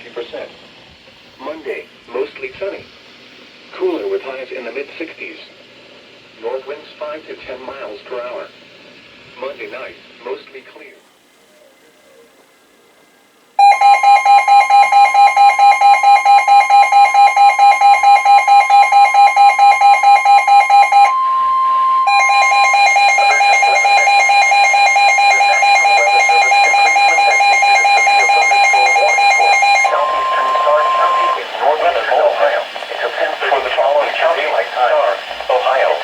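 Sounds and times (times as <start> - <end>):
electronic alarm beeping: 13.6 - 32.4.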